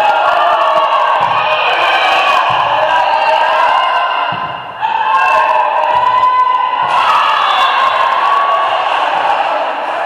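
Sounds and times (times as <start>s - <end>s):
crowd cheering and shouting: 0.0s - 10.0s.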